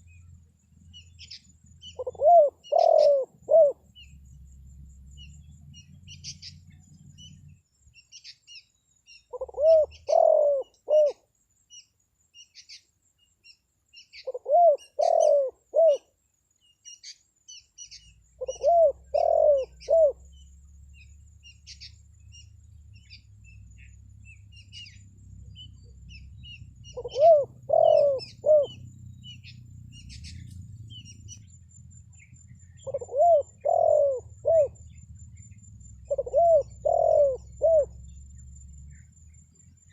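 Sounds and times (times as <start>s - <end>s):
small birds chirping: 0.0s - 39.9s
dove cooing: 1.2s - 4.1s, 9.3s - 11.2s, 14.2s - 16.1s, 18.4s - 20.4s, 24.5s - 31.3s, 32.6s - 38.2s.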